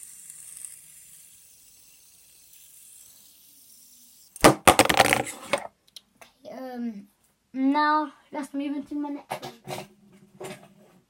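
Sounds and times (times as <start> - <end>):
fidget spinner whirring: 0.0 - 5.7.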